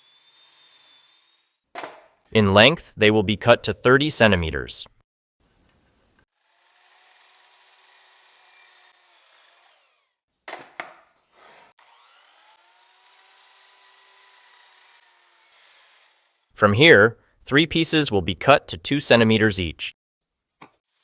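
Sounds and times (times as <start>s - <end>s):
power saw motor whine: 0.0s - 1.6s, 11.4s - 16.5s
saw cutting wood: 0.0s - 2.1s, 6.3s - 16.6s.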